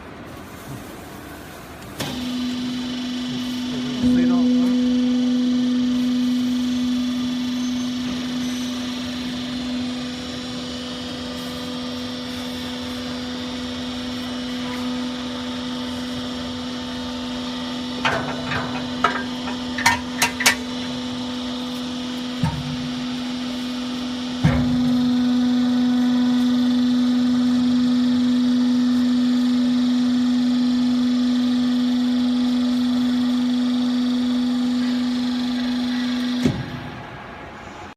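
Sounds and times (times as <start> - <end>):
motor and pump humming: 0.0 - 37.9
machine clunk: 17.9 - 21.0, 22.3 - 23.3
metallic clanks: 18.0 - 20.8.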